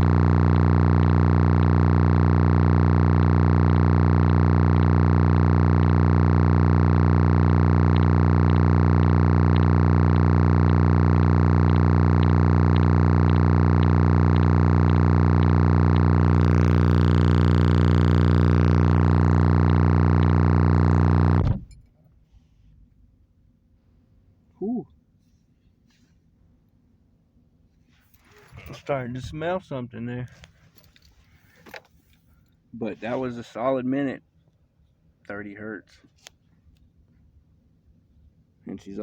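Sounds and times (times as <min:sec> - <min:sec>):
faint regular ticks: 0:00.0 - 0:21.4
distorted bass tone drone: 0:00.0 - 0:21.7.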